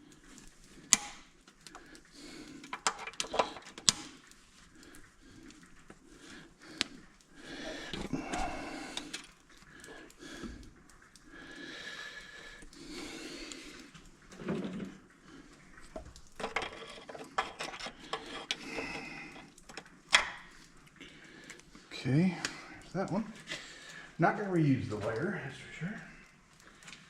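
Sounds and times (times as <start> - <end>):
sharp clicks: 0.8 - 2.0, 2.6 - 5.6
wire scraping against metal: 15.8 - 20.5.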